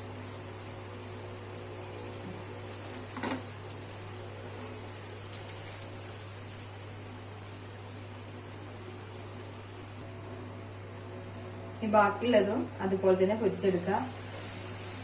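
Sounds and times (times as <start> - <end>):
food deep-frying in oil: 0.0 - 10.0, 13.5 - 15.0.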